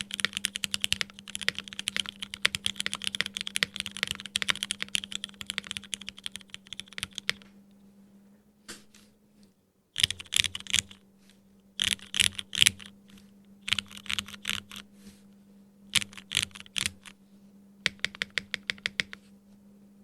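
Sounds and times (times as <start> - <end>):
mechanical keyboard typing: 0.0 - 7.5, 10.0 - 11.0, 11.8 - 14.8, 15.9 - 17.2, 17.8 - 19.2.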